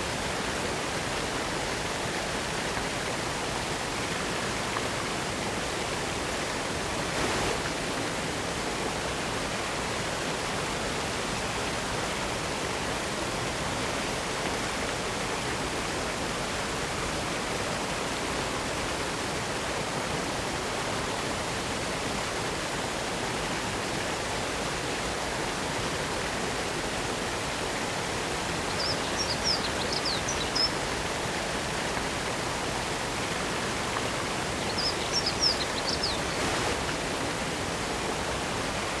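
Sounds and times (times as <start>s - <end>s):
waterfall rushing and splashing: 0.0s - 39.0s.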